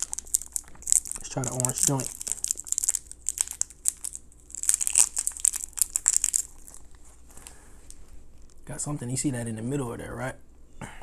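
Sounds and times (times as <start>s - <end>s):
plastic candy wrapper crinkling: 0.0s - 8.7s.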